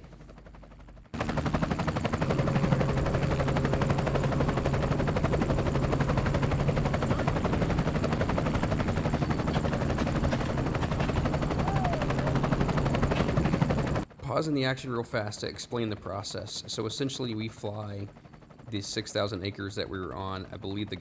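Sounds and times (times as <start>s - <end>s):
helicopter rotor chopping: 0.0s - 21.0s.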